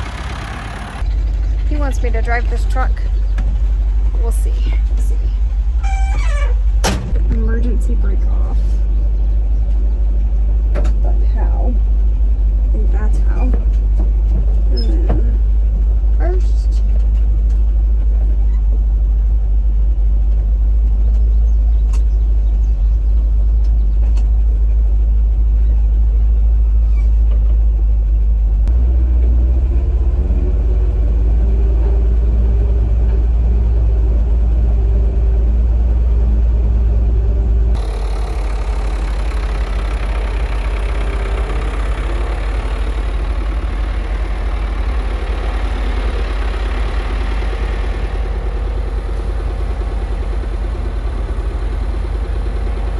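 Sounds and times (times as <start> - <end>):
thinner brighter engine noise: 0.0 - 5.8, 28.7 - 52.9
truck engine deep rumble: 0.0 - 52.9.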